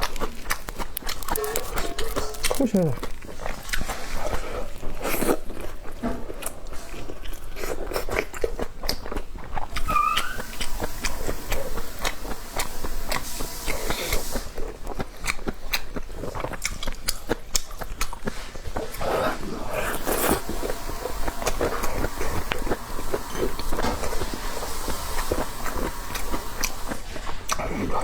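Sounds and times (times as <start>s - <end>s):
mouth smacks: 0.0s - 3.9s
biting and chewing: 0.0s - 28.0s.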